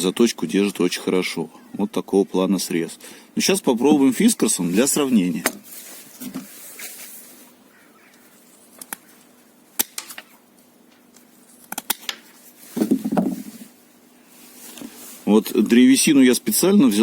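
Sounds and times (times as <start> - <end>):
pruning shears cutting branch: 9.7 - 10.4, 11.0 - 12.4
dull crunch of wood: 12.7 - 13.8.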